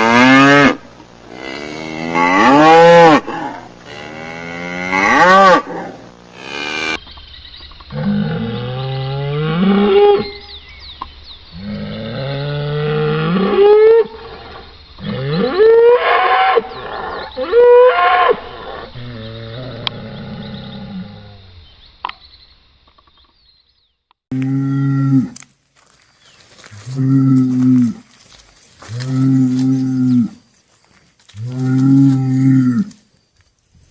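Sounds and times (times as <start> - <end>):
cattle mooing and bellowing: 0.0 - 7.0, 7.9 - 10.4, 11.6 - 21.4, 24.3 - 25.4, 26.8 - 30.4, 31.3 - 33.0.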